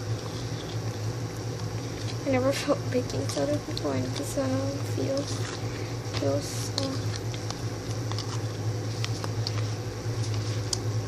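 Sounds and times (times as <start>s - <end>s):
steady low hum: 0.0s - 11.0s
wet slime squishes: 3.0s - 10.9s.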